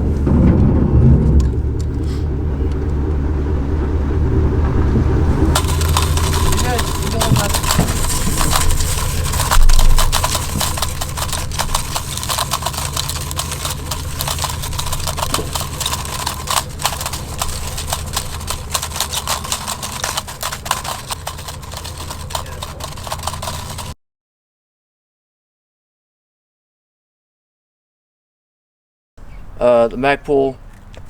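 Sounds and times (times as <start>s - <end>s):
vehicle engine hum: 0.0s - 24.0s
rifle clattering over ground: 5.6s - 23.9s.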